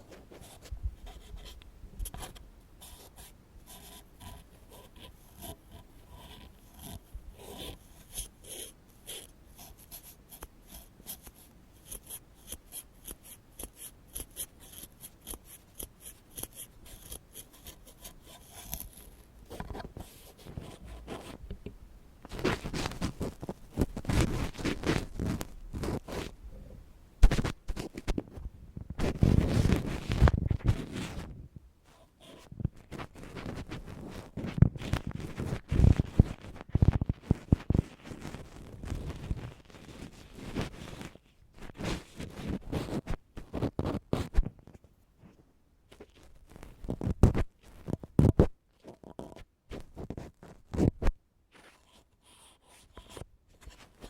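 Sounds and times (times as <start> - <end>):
ear pick scratching: 0.0 - 21.6, 22.3 - 26.4, 29.0 - 31.3, 32.0 - 44.4.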